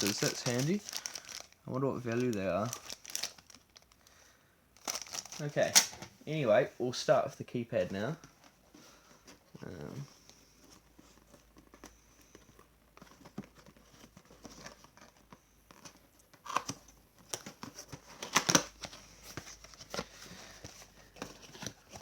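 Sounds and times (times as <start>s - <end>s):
packaging crinkling and tearing: 0.0s - 4.1s, 4.8s - 6.0s, 13.0s - 22.0s.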